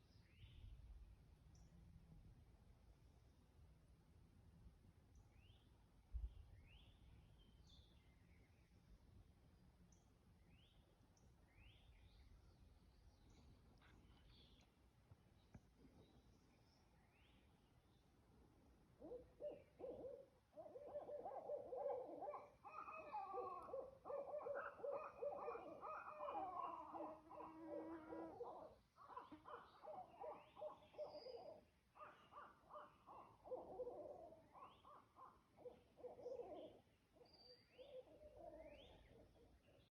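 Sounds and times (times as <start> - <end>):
owl hooting and calling: 19.0 - 39.8.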